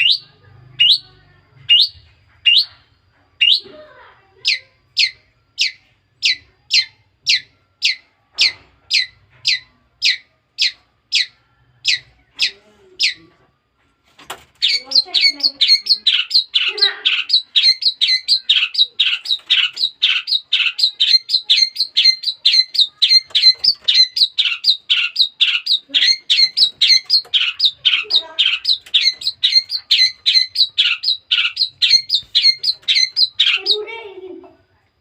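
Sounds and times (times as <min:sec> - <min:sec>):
young shrike calling: 0:14.6 - 0:34.4.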